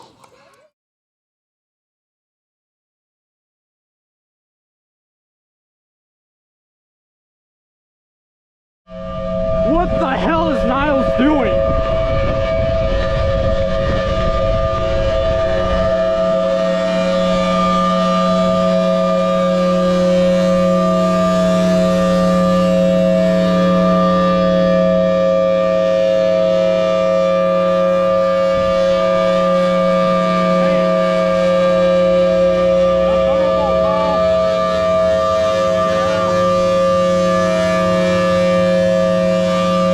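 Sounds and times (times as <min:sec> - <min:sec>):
outdoor warning siren steady tone: 0:08.9 - 0:39.9.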